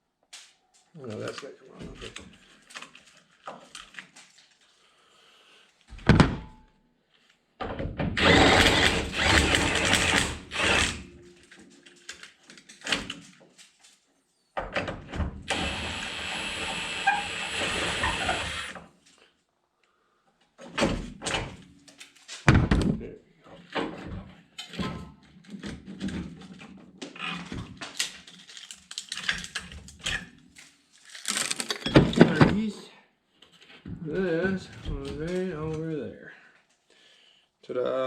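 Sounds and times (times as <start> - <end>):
thump: 5.9 - 6.6, 22.5 - 23.0
tools and metal parts clanking: 31.2 - 32.6.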